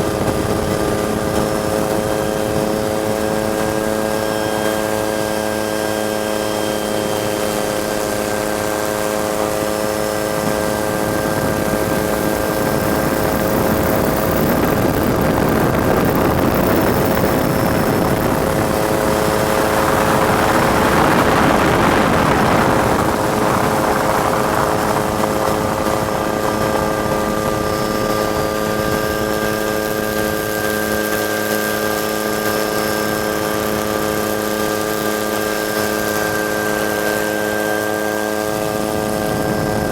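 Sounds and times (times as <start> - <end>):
helicopter turbine and rotor whine: 0.0 - 39.9.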